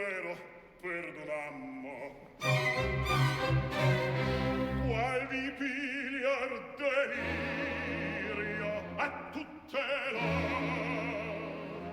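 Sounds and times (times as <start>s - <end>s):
operatic singing with vibrato: 0.0s - 11.9s
orchestral accompaniment: 2.4s - 5.2s.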